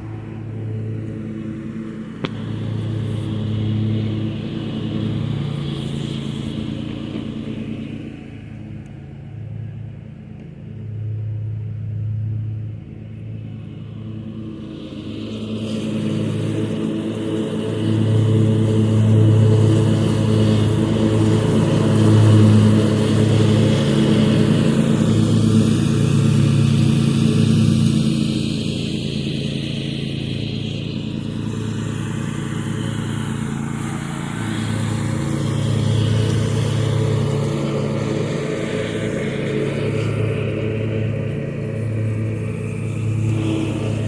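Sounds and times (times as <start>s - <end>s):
lawn mower engine running: 0.0s - 44.0s.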